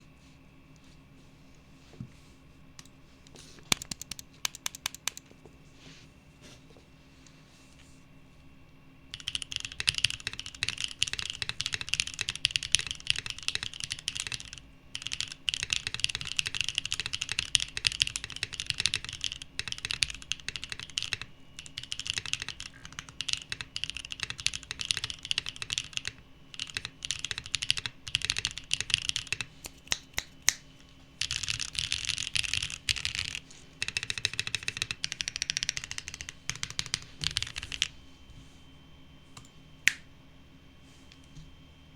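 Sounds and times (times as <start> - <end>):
typing on mechanical keyboard: 3.7 - 5.2, 9.2 - 29.5, 31.2 - 37.9.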